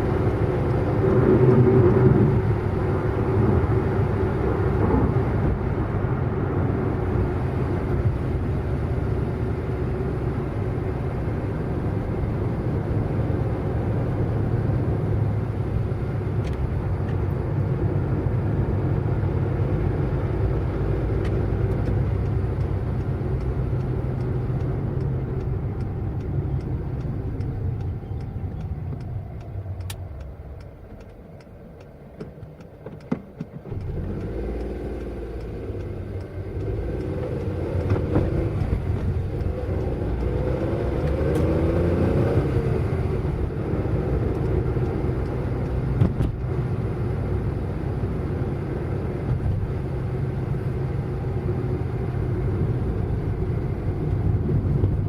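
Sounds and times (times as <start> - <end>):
car engine and road rumble: 0.0 - 55.0
sharp clicks: 21.1 - 41.6.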